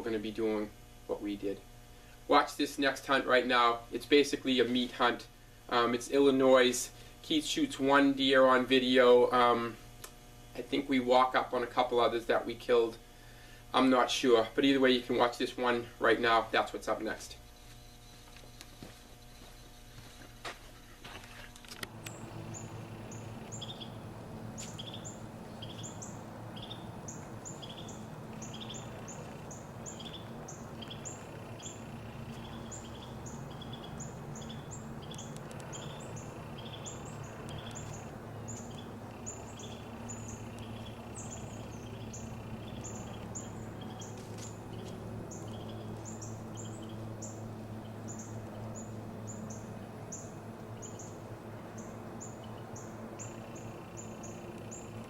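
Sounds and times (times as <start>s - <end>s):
low outdoor rumble: 21.9s - 55.0s.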